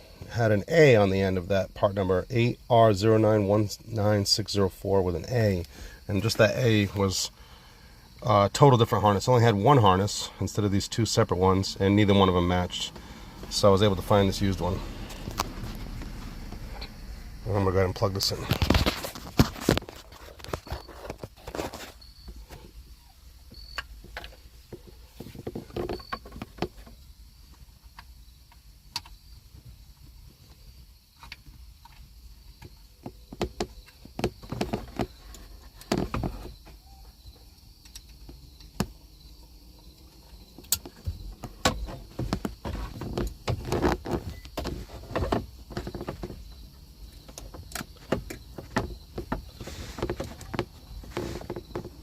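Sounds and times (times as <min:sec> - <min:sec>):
handling rumble on microphone: 0:08.8 - 0:22.7, 0:48.6 - 0:52.0.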